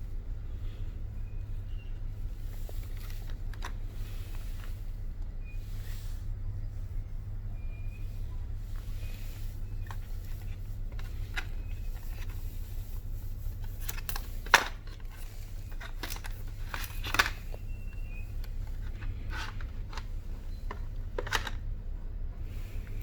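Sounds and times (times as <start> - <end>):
packaging rustling and scraping: 8.7 - 21.7.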